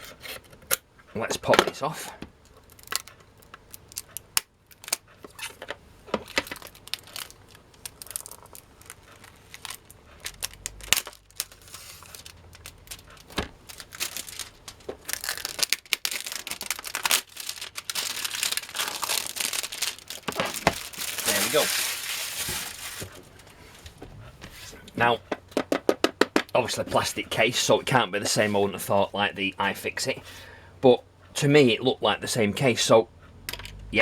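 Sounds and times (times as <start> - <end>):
plastic crinkling: 2.5 - 24.0
plastic shrink wrap tearing: 6.3 - 23.5.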